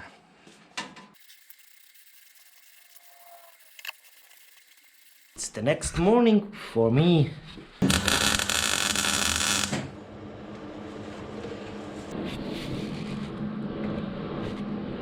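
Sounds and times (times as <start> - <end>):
power tool motor running: 7.8 - 9.8.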